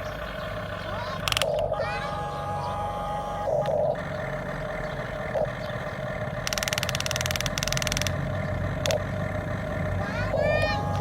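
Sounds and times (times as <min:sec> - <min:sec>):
vehicle engine running: 0:00.0 - 0:11.0
fast rattling buzz: 0:06.3 - 0:09.0.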